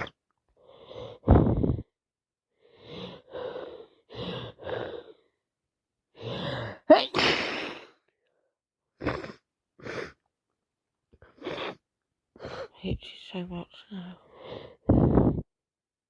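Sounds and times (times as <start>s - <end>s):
woman breathing: 2.5s - 5.4s, 14.2s - 15.5s
woman sneezing: 6.9s - 8.0s.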